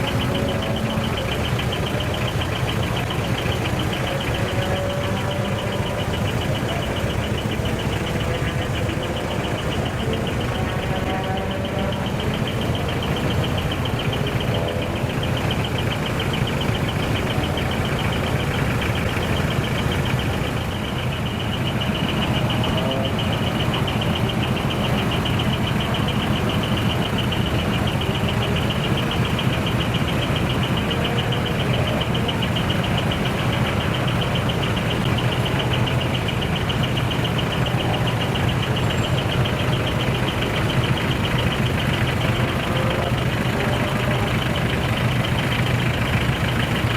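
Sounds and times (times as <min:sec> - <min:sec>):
diesel truck engine running: 0:00.0 - 0:46.9.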